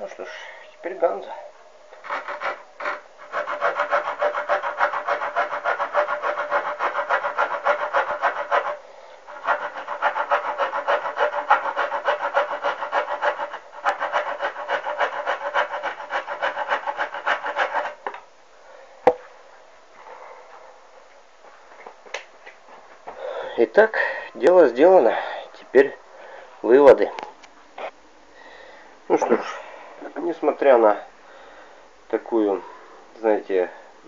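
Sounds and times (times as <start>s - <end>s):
saw cutting through wood: 2.0s - 18.0s.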